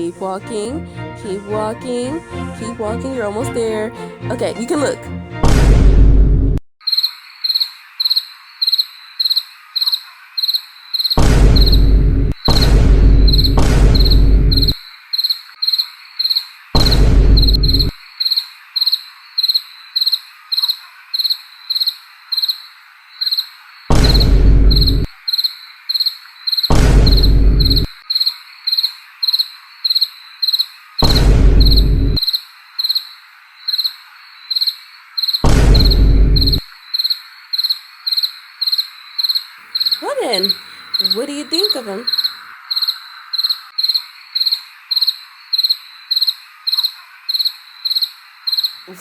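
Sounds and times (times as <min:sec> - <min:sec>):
cricket chirping: 0:42.1 - 0:48.8.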